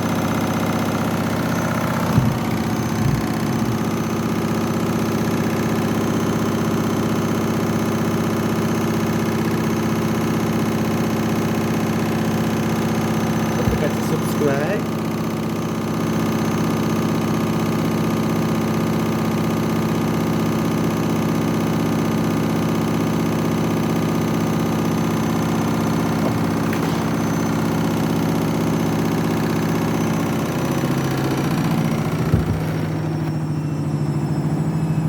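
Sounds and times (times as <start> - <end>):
washing machine spinning: 0.0 - 35.0
washing machine drum knock: 2.1 - 4.1, 13.6 - 14.0, 31.0 - 33.1.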